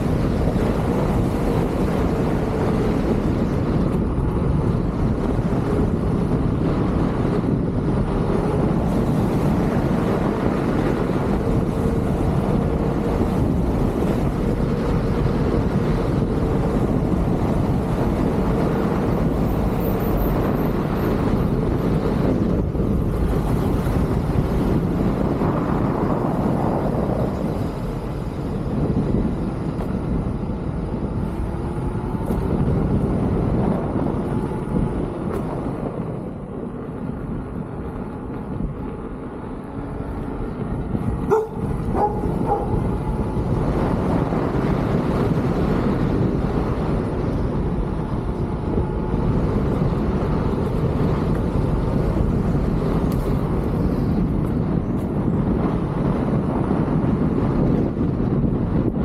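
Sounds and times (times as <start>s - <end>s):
road rumble: 0.0s - 59.0s
wind rushing over microphone: 0.0s - 59.0s.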